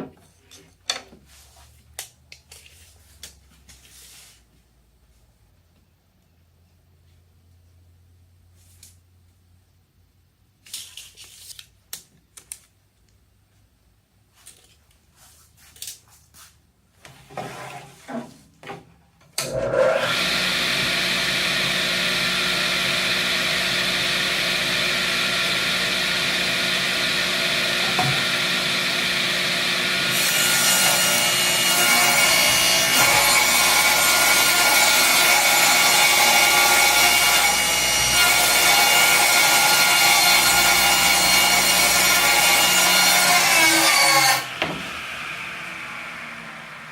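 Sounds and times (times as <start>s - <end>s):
knocks and handling sounds: 0.0s - 4.6s
electric saw cutting wood: 19.4s - 46.9s.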